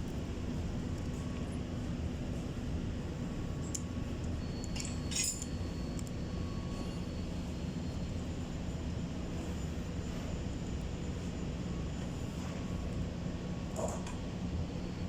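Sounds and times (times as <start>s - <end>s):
steady low hum: 0.0s - 15.0s
metal tools clinking: 4.6s - 5.6s.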